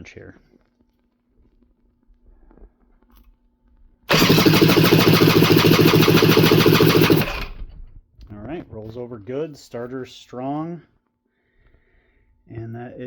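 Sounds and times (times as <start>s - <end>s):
electric starter cranking engine: 4.1s - 7.8s.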